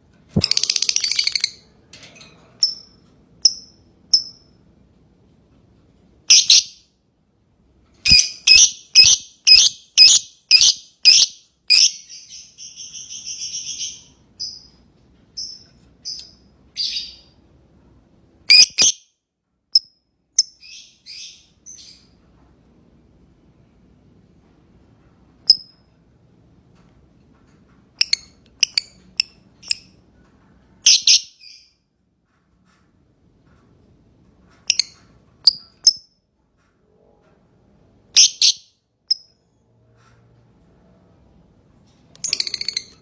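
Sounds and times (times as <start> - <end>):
lovebird chirping and chattering: 0.4 - 1.6, 6.3 - 6.8, 8.1 - 14.7, 15.4 - 17.3, 18.5 - 19.0, 30.9 - 31.7, 38.1 - 39.3, 42.2 - 43.0.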